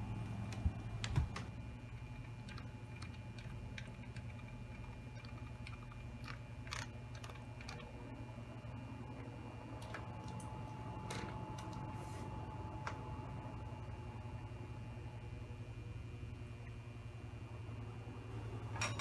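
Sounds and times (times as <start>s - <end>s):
fan oscillation clicks: 0.0s - 8.2s, 9.1s - 11.9s, 12.7s - 13.1s
table fan motor hum: 0.0s - 19.0s.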